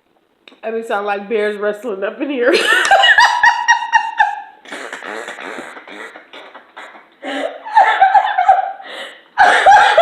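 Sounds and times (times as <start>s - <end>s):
person laughing: 2.6s - 10.0s.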